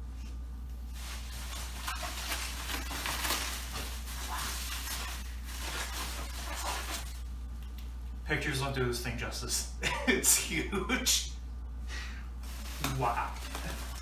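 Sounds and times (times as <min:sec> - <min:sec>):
steady low hum: 0:00.0 - 0:14.0
packaging rustling and crinkling: 0:00.9 - 0:07.2, 0:12.4 - 0:14.0.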